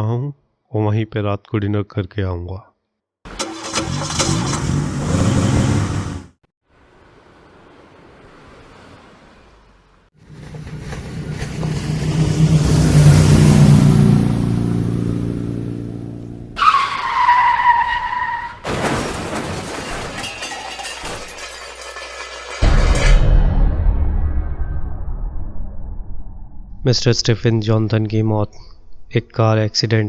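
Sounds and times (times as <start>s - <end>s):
tyres screeching: 3.3s - 6.2s, 16.6s - 18.7s
car engine approaching: 7.0s - 16.9s
car crash: 17.9s - 26.5s
debris scattering: 18.4s - 23.8s
glass shattering: 18.6s - 23.3s.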